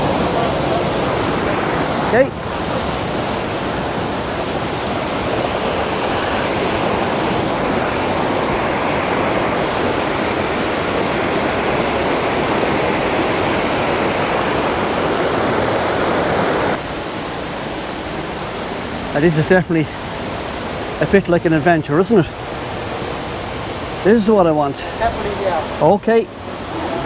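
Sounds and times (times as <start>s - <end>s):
waterfall rushing: 0.0s - 17.4s.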